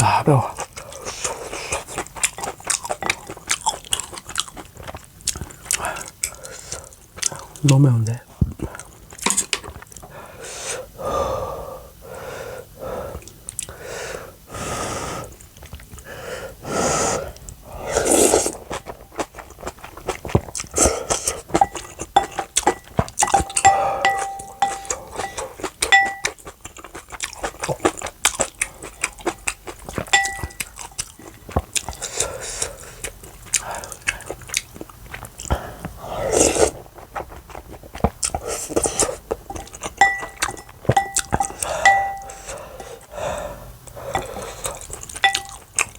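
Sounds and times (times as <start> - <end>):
crisp chewing and crunching: 0.0 - 7.8, 17.3 - 23.7, 24.3 - 41.8, 43.9 - 45.9
breathy sounds: 20.8 - 26.2, 41.0 - 44.9
metal utensils clinking on bowl: 21.5 - 26.4, 30.0 - 30.7, 39.5 - 43.0, 45.2 - 45.7.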